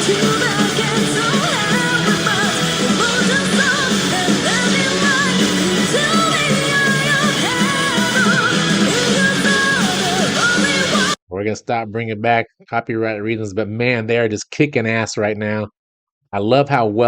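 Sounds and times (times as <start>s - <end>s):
bass guitar: 0.0s - 11.2s
distorted electric guitars: 0.0s - 11.2s
fast drums: 0.0s - 11.2s
woman singing high lead vocal: 0.0s - 11.2s.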